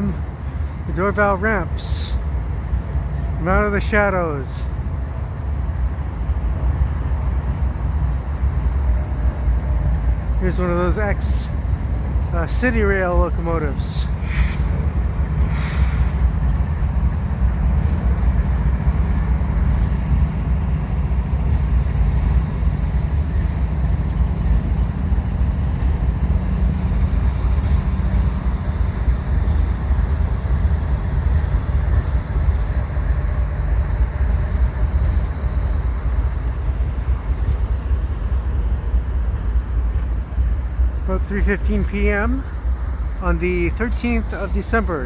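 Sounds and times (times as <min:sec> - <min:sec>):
diesel locomotive engines rumbling: 0:00.0 - 0:45.0.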